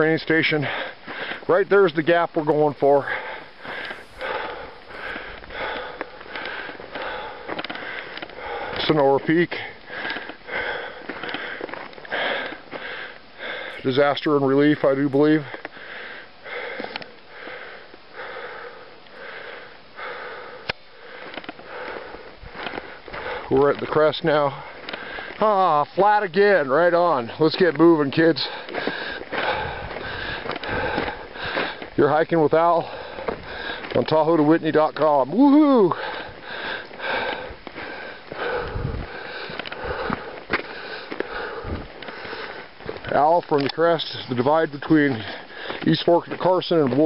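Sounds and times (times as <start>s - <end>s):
person breathing hard: 0.5s - 1.5s, 2.8s - 13.9s, 15.4s - 23.6s, 24.5s - 25.6s, 28.3s - 32.0s, 32.7s - 34.0s, 35.7s - 43.1s, 44.1s - 46.4s.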